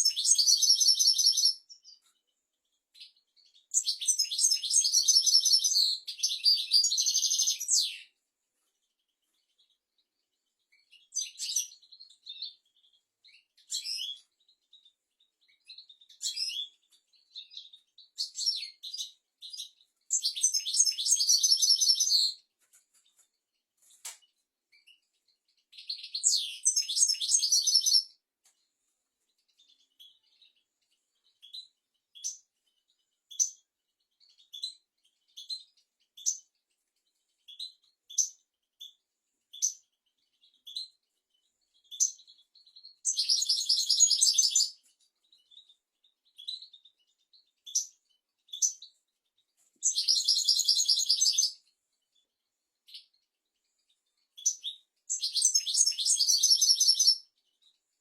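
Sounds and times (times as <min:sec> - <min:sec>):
goldfinch singing: 0:00.0 - 0:02.2, 0:02.9 - 0:08.1, 0:10.7 - 0:22.4, 0:24.7 - 0:28.2, 0:34.2 - 0:36.5, 0:37.4 - 0:41.0, 0:41.8 - 0:51.7, 0:54.2 - 0:57.7.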